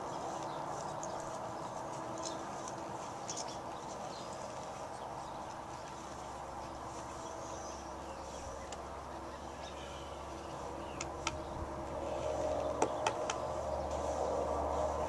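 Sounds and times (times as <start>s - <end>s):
horse hooves on dirt: 0.0s - 15.0s
sharp hoof knocks: 12.6s - 13.5s.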